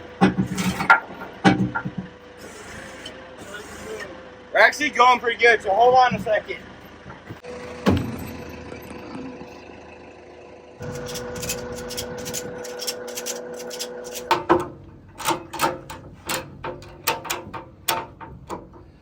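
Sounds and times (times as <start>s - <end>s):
engine running: 0.0s - 19.0s
irregular knocks and clicks: 0.2s - 2.2s.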